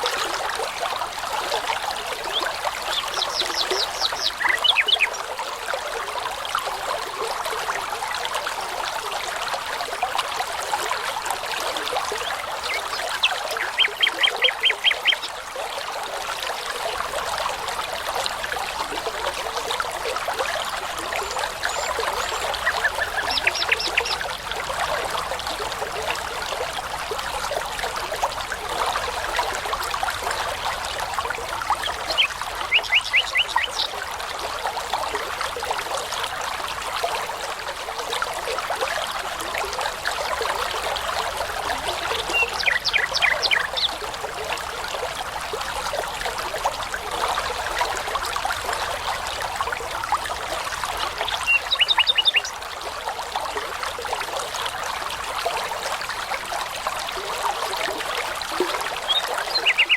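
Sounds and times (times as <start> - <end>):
babbling brook: 0.0 - 59.9
songbird singing: 2.3 - 5.3, 12.2 - 15.3, 21.3 - 24.3, 31.9 - 34.0, 41.9 - 44.0, 51.2 - 52.6, 59.0 - 59.9.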